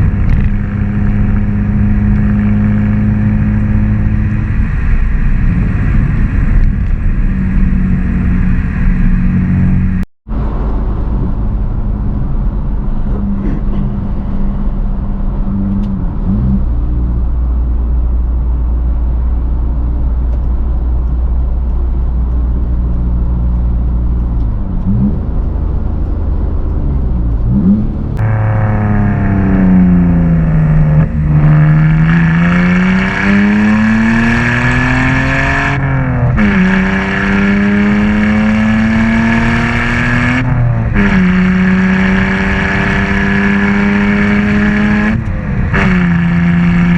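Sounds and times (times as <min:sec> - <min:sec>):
car engine revving through gears: 0:00.0 - 0:17.5, 0:20.3 - 0:46.9.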